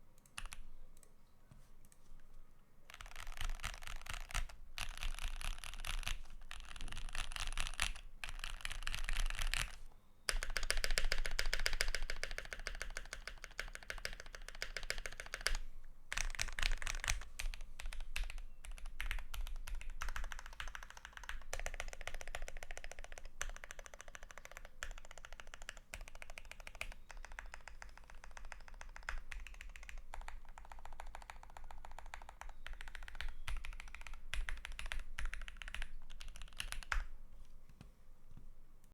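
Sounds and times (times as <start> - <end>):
mechanical keyboard typing: 0.2 - 1.1, 2.9 - 37.1.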